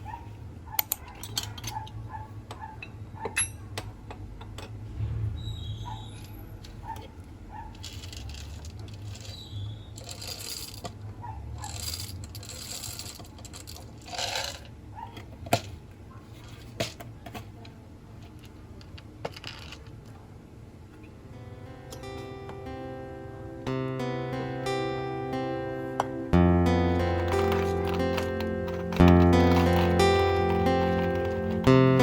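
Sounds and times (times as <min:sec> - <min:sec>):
sharp clicks and clinks: 0:26.9 - 0:32.0
rustling: 0:27.2 - 0:32.0.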